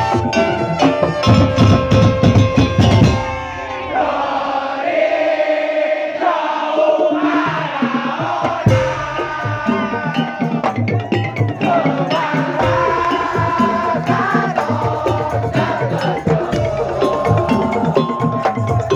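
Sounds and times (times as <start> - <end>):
loud ensemble drumming: 0.0 - 4.2, 7.0 - 18.9
wavering melodic line: 8.7 - 18.9.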